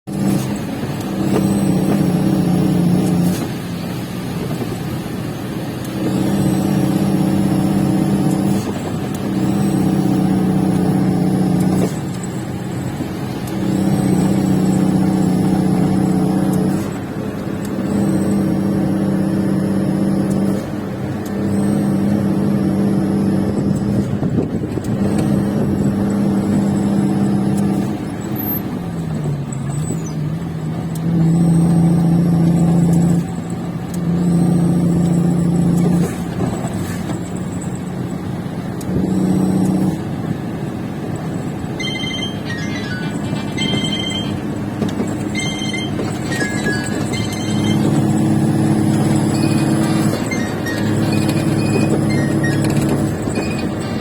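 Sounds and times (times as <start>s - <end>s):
truck rumbling: 0.0s - 54.0s
droning tone: 41.8s - 54.0s.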